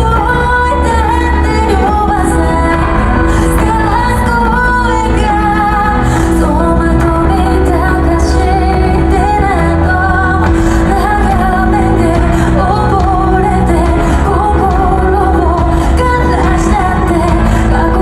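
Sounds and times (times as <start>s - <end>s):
live band with heavy bass: 0.0s - 18.0s
woman singing: 0.0s - 18.0s.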